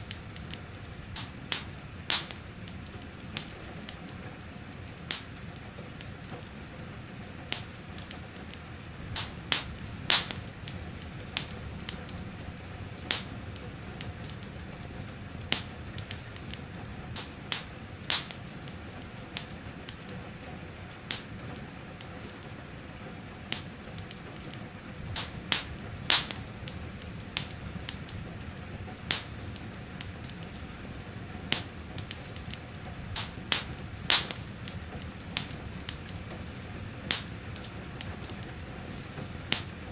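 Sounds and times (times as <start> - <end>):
gentle rain hiss: 0.0 - 39.9
wood fire crackling and popping: 0.0 - 39.9.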